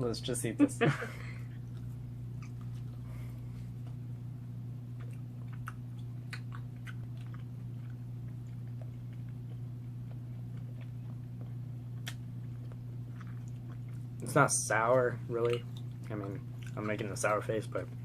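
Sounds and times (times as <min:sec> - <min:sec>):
low hum: 0:00.0 - 0:18.0
wet mouth clicks chewing: 0:05.0 - 0:14.1, 0:15.4 - 0:17.0.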